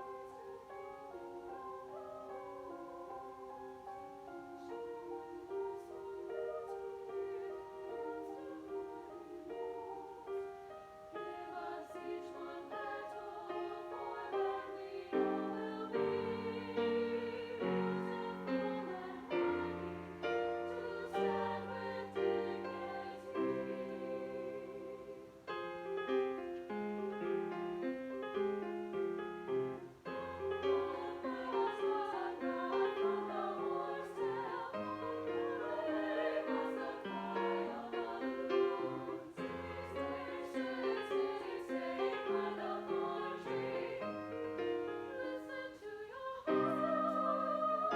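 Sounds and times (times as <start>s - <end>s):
choir singing in parts: 0.0s - 47.9s
piano: 0.0s - 47.9s.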